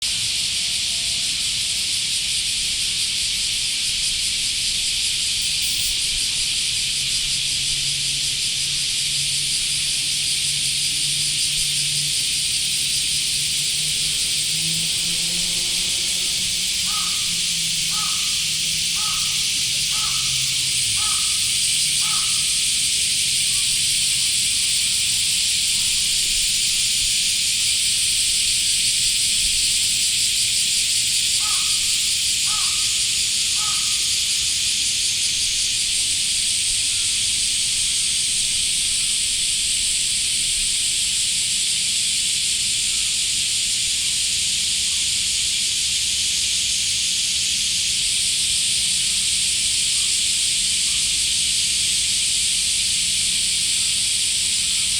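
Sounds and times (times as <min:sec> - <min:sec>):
cicada chorus buzzing: 0:00.0 - 0:54.9
crow cawing: 0:16.8 - 0:22.6, 0:31.4 - 0:33.0, 0:33.6 - 0:34.2.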